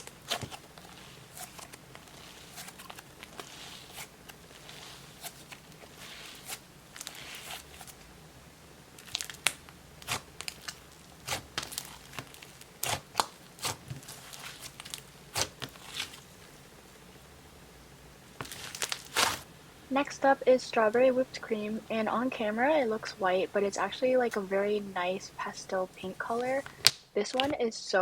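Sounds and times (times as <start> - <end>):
slime crackling and popping: 0.0 - 8.1, 8.9 - 16.5, 18.3 - 20.1, 26.3 - 27.6.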